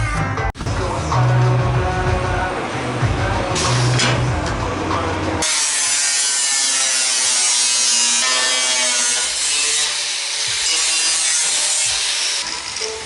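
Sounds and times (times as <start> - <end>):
power tool grinding sheet metal: 2.8 - 13.0.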